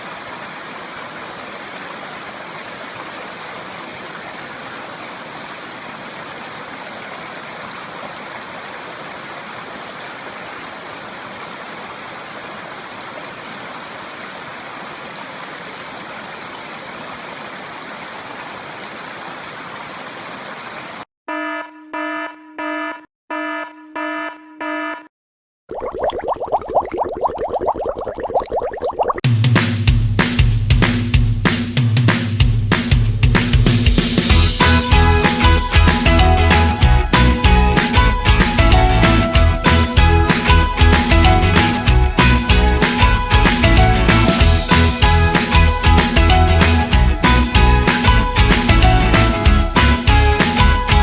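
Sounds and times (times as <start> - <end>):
short electronic beeps: 21.3 - 25.1.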